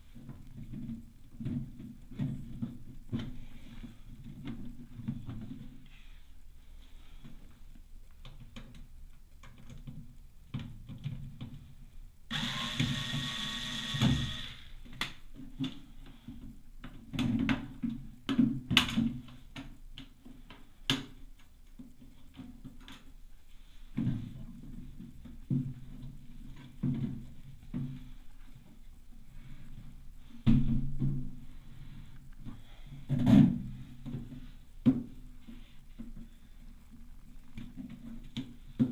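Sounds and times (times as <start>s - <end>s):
whirring hiss: 12.3s - 14.8s.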